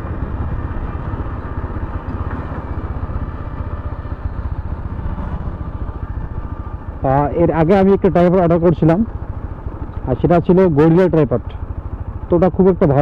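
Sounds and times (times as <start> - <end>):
motorcycle engine running: 0.0 - 13.0.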